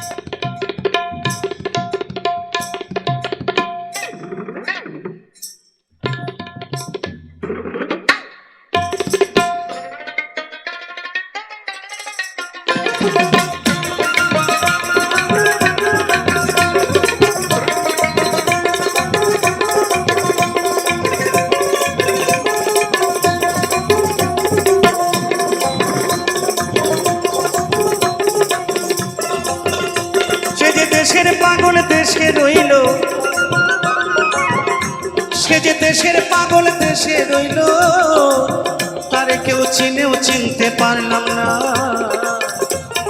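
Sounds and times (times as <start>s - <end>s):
hand drums rhythm: 0.0s - 4.4s, 6.0s - 9.8s, 12.0s - 43.0s
folk band instrumental melody: 8.8s - 43.0s.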